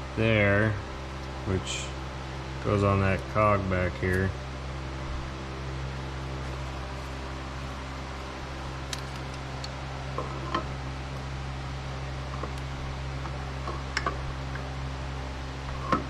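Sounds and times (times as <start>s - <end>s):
steady background hum: 0.0s - 16.0s
metallic clicks of engine parts: 8.8s - 10.7s.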